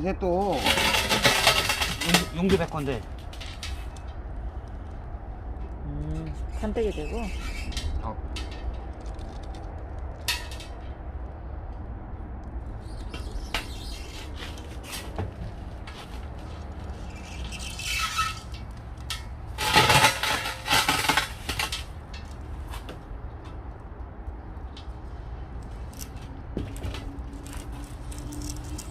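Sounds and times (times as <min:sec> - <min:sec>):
metal scraping rattle: 0:00.4 - 0:04.9, 0:06.4 - 0:11.0, 0:12.8 - 0:23.5
metal clinks and knocks: 0:00.5 - 0:04.2, 0:07.5 - 0:11.0.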